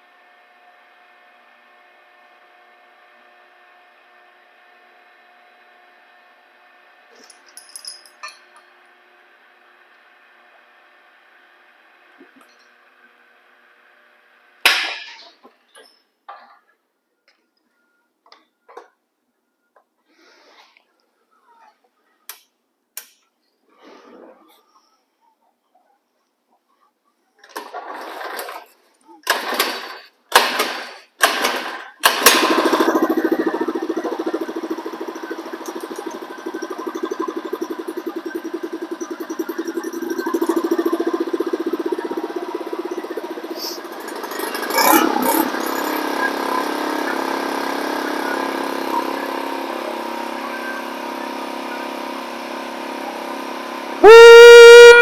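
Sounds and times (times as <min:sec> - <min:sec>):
small engine starting and dying: 0:27.4 - 0:55.0
small engine running: 0:29.3 - 0:55.0.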